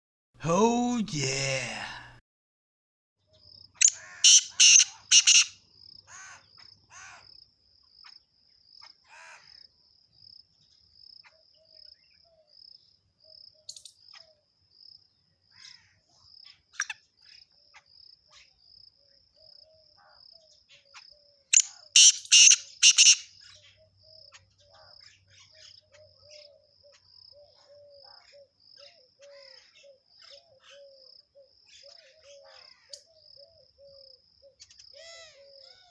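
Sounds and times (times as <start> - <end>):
lower pulsing bird call: 3.8 - 5.5, 22.0 - 23.2
songbirds chirping: 19.4 - 35.9.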